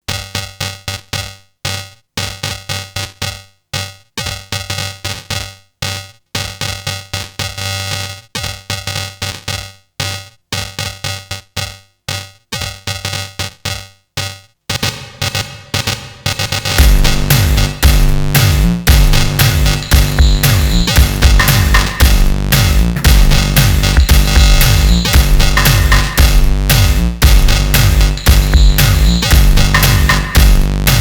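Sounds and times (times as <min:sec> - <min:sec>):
chopped electronic beat: 0:14.7 - 0:31.0.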